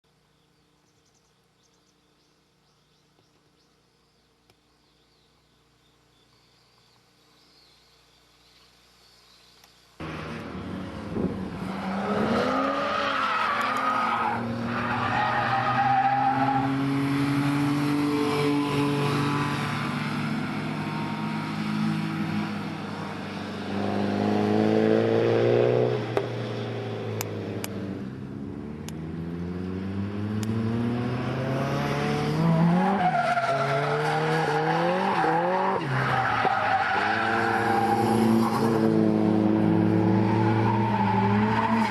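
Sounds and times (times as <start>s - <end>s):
car engine revving: 10.0s - 41.9s.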